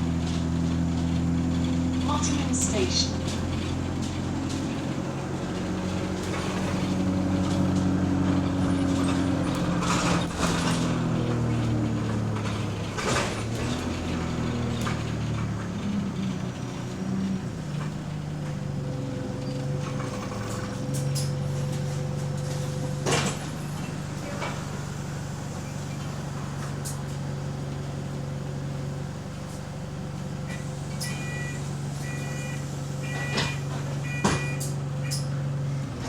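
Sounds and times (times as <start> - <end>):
bus engine drone: 0.0 - 36.0.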